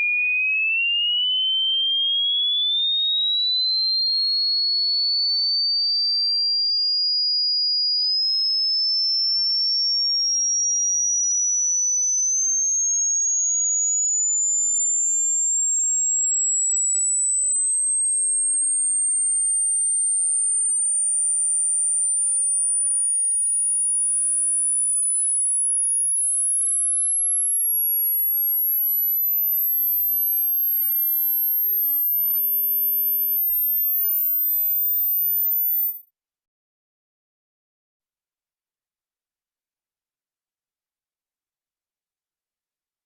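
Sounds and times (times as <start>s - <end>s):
high sine tone rising: 26.0s - 36.0s.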